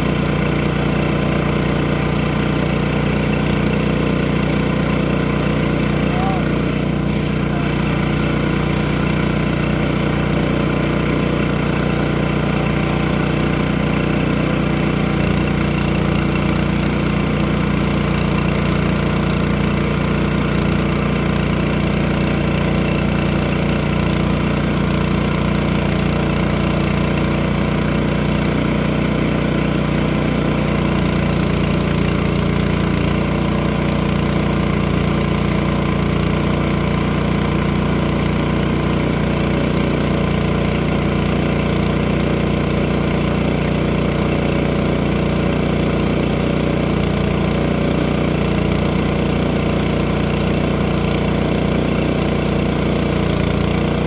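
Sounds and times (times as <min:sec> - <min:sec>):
engine running steadily: 0:00.0 - 0:54.0.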